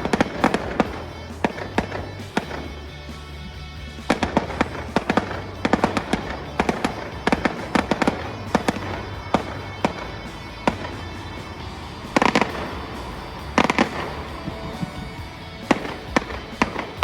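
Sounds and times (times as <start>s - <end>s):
fireworks cracking and banging: 0.0s - 17.0s.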